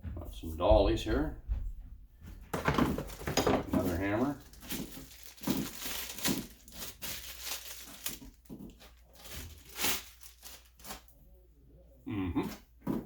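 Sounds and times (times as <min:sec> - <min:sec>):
packaging rustling: 0:02.5 - 0:11.1.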